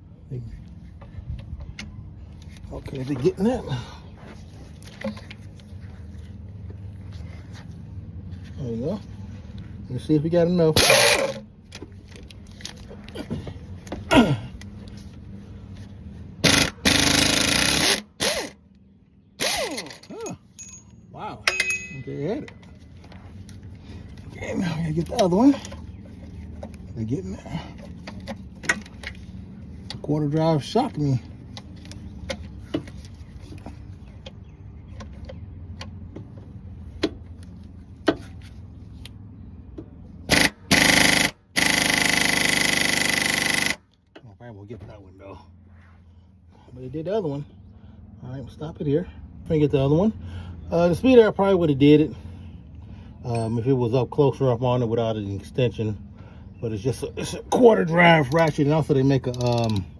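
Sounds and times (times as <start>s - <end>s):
power ratchet buzzing: 10.8s - 11.4s, 16.4s - 18.6s, 19.4s - 20.7s, 40.3s - 43.8s.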